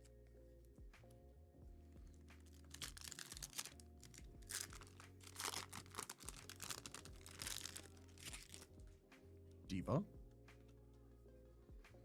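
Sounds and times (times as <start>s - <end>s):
background music: 0.0s - 12.0s
card wrappers crinkling: 2.4s - 8.7s.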